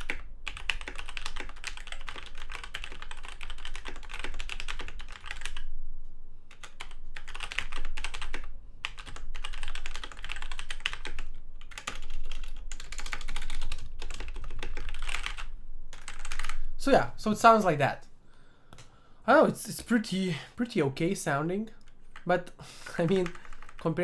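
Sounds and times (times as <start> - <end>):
fast typing on mechanical keyboard: 0.0 - 5.6, 6.5 - 16.6, 22.1 - 24.0.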